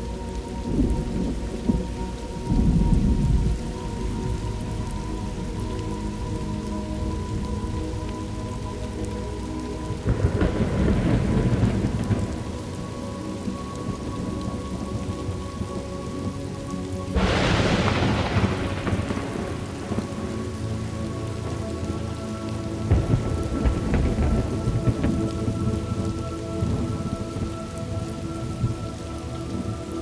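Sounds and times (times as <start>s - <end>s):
steady rain: 0.0s - 30.0s
thunder rumbling: 0.0s - 30.0s
sharp thunderclap: 17.2s - 20.2s, 22.9s - 25.3s.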